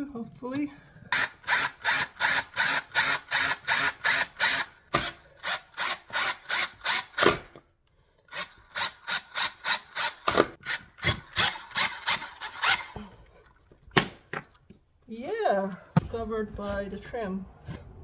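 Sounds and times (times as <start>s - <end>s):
screw grinding into wood: 1.1s - 7.6s, 8.2s - 13.1s.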